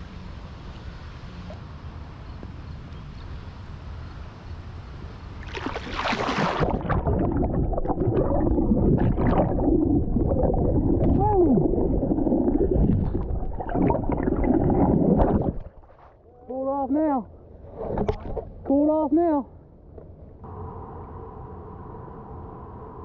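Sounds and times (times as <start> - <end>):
loud splash into water: 5.4 - 16.1
muffled water sloshing and gurgling: 5.4 - 18.8.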